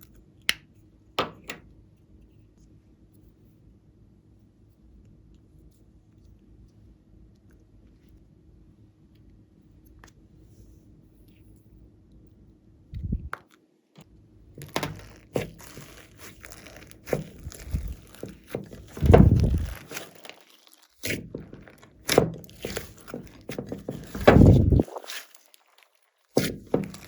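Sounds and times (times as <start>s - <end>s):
slime squishing by hand: 14.6s - 27.0s.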